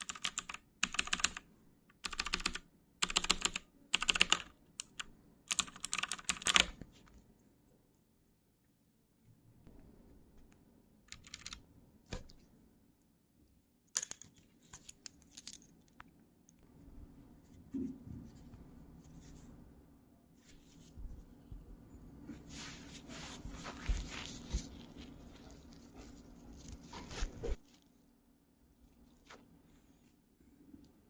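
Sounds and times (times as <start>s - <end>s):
mechanical keyboard clicks: 0.0s - 1.4s, 2.0s - 6.8s, 11.1s - 11.6s.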